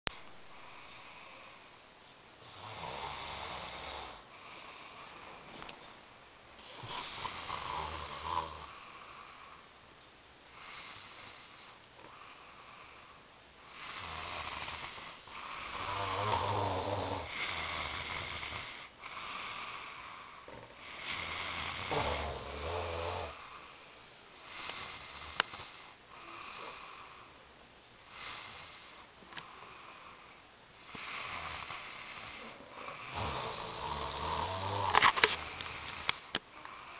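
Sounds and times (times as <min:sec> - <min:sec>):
person snoring with rattle: 0:02.4 - 0:04.9, 0:06.6 - 0:09.3, 0:13.6 - 0:23.8, 0:24.5 - 0:27.3, 0:30.8 - 0:36.9.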